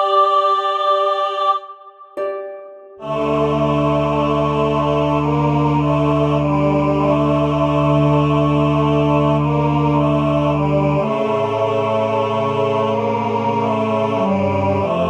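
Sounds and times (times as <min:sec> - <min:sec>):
sustained droning chords: 0:03.0 - 0:15.0.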